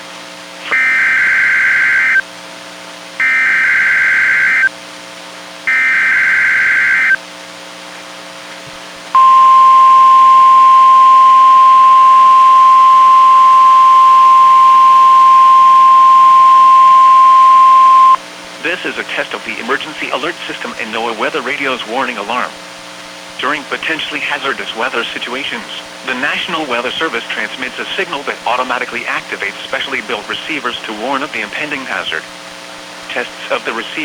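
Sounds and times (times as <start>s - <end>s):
buzzy digital data bursts: 0.7s - 2.2s, 3.2s - 4.7s, 5.7s - 7.2s
warning alarm tone: 0.7s - 2.2s, 3.2s - 4.7s, 5.7s - 7.2s, 9.2s - 18.2s
low hum: 5.7s - 7.2s, 9.2s - 18.2s.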